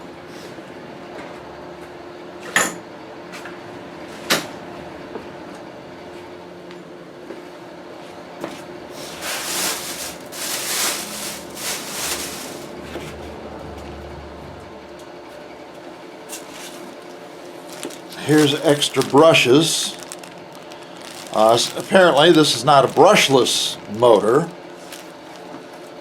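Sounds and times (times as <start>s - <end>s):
packaging rustling: 9.0s - 12.8s, 16.3s - 26.0s.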